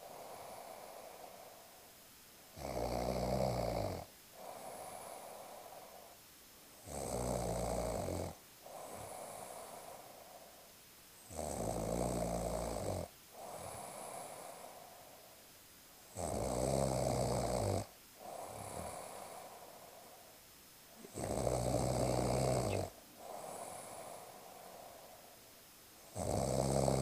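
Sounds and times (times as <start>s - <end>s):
airy breath: 0.0s - 2.0s, 4.3s - 6.2s, 8.6s - 10.7s, 13.3s - 15.4s, 18.2s - 25.6s
person snoring: 2.6s - 6.2s, 6.8s - 10.5s, 11.3s - 15.2s, 16.1s - 20.2s, 20.9s - 25.4s, 26.1s - 27.0s.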